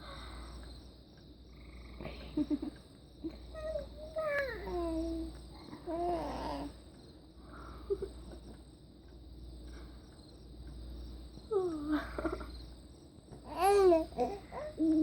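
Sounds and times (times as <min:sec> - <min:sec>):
faint high-pitched hiss: 0:00.0 - 0:15.0
baby cooing and squealing: 0:13.5 - 0:14.9.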